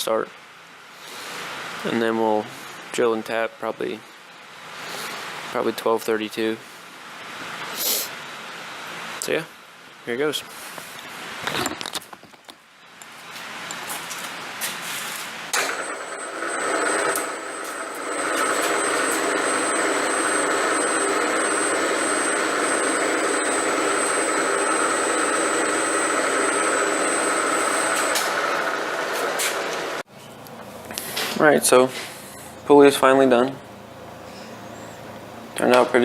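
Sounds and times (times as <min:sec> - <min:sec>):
end mill machining with high whine: 0:15.6 - 0:30.0.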